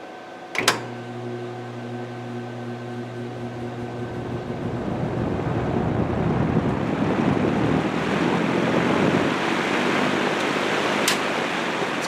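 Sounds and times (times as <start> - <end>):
electric fan motor hum: 0.0 - 12.0
rush of air from fan: 3.7 - 12.0.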